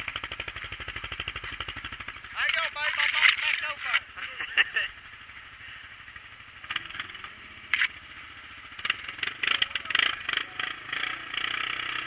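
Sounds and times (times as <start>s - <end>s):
vehicle engine running: 0.0s - 12.0s
clattering bumps: 2.4s - 4.0s.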